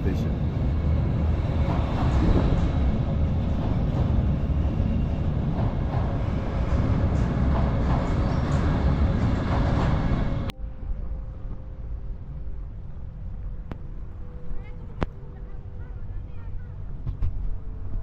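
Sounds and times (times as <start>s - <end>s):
faint rail clatter: 0.0s - 10.5s
train rumbling over steel bridge: 0.0s - 18.0s.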